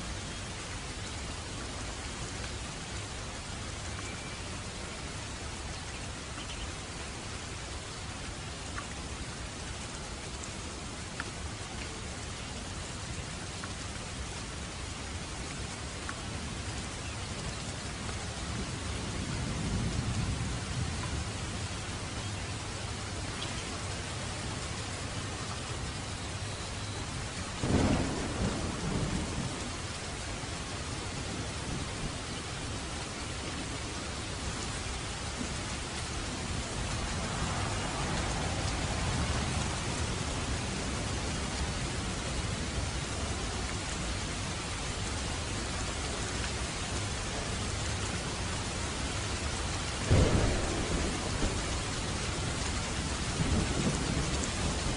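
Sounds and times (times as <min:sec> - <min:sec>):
steady rain falling: 0:00.0 - 0:54.9
distant thunder rumble: 0:27.6 - 0:32.6, 0:34.8 - 0:44.0, 0:49.4 - 0:54.9.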